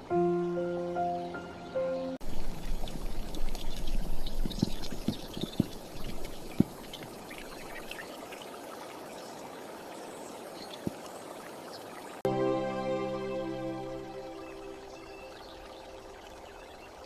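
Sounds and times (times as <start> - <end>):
river water splashing: 0.9 - 17.0.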